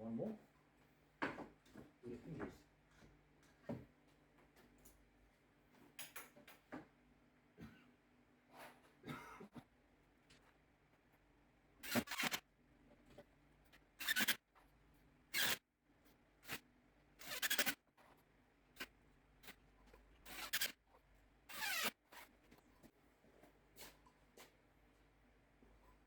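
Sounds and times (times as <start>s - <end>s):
squeaky scraping and rubbing: 11.8s - 12.4s, 14.0s - 14.4s, 17.2s - 17.8s, 20.2s - 20.8s, 21.5s - 22.4s.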